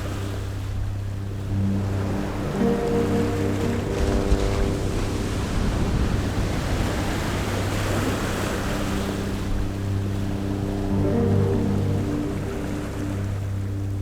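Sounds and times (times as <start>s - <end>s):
ocean waves washing ashore: 0.0s - 14.0s
soft background music: 0.0s - 14.0s.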